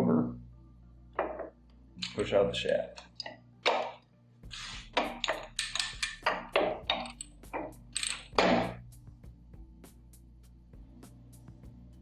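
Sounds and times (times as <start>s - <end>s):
faint background music: 0.0s - 12.0s
metal parts clinking: 4.6s - 6.0s, 7.6s - 8.7s.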